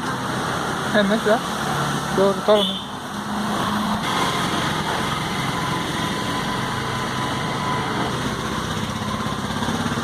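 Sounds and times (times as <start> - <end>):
small engine running: 3.6 - 10.0.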